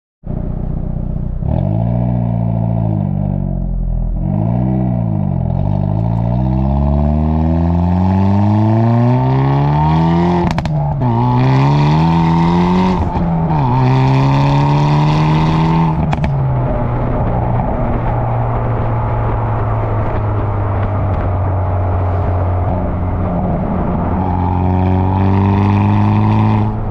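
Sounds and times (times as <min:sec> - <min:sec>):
car engine revving: 0:00.3 - 0:26.9
exhaust pops and crackles: 0:10.4 - 0:11.4, 0:16.0 - 0:24.4.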